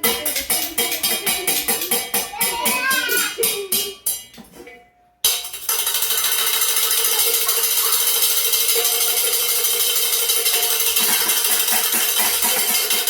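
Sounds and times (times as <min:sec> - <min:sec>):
spoons clattering: 0:05.3 - 0:13.0.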